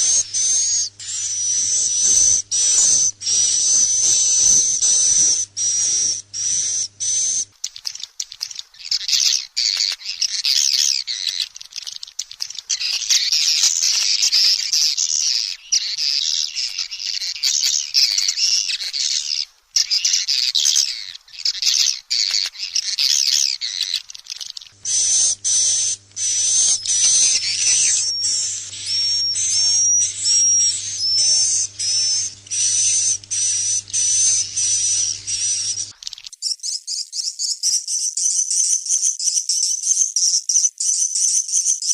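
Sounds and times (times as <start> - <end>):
low steady hum: 0.0 - 7.6, 24.0 - 36.0
swiftlets twittering: 0.0 - 36.3.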